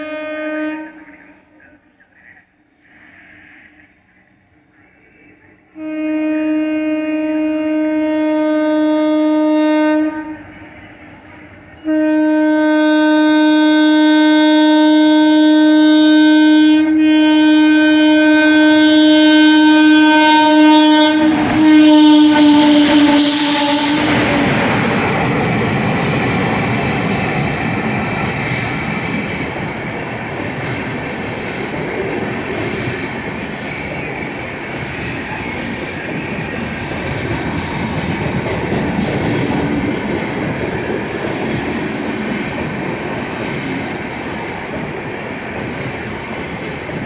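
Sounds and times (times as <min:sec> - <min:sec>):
electric locomotive horn blasts: 0:00.0 - 0:01.4, 0:05.8 - 0:10.8, 0:11.7 - 0:25.2
train rushing past: 0:00.0 - 0:02.2, 0:05.4 - 0:47.0.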